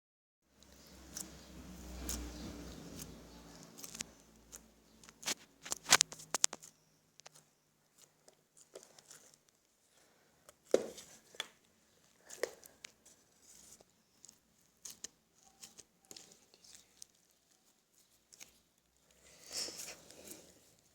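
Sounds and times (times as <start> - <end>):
slime crackling and popping: 2.1 - 7.4.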